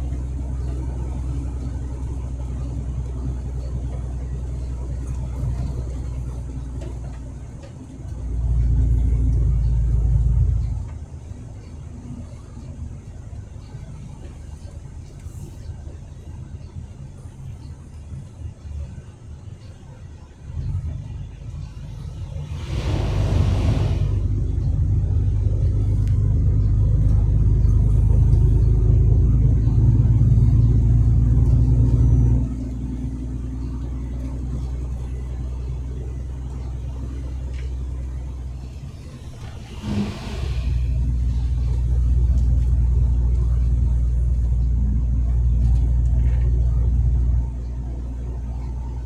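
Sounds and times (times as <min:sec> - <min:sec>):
truck engine droning: 0:00.0 - 0:49.0
brief rushing hisses: 0:22.3 - 0:24.4, 0:38.8 - 0:41.8.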